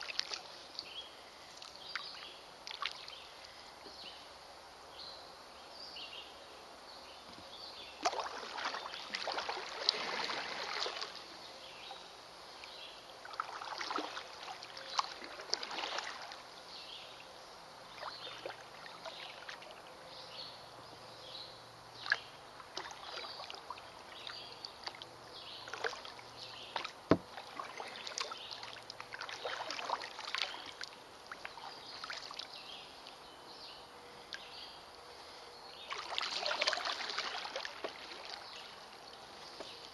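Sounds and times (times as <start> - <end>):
paddle splashing in water: 0.0 - 0.4, 8.0 - 11.2, 13.2 - 16.4, 22.0 - 25.0, 25.6 - 32.5, 35.9 - 39.9
water trickling: 22.0 - 32.6, 35.9 - 39.9.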